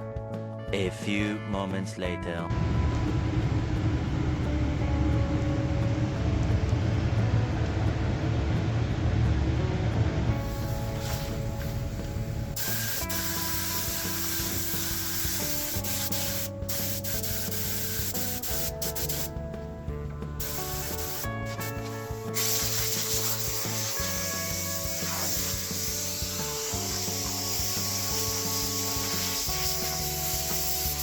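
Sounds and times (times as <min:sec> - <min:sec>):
background music with held notes: 0:00.0 - 0:31.0
sanding rubbing hiss: 0:10.4 - 0:19.4, 0:20.4 - 0:31.0.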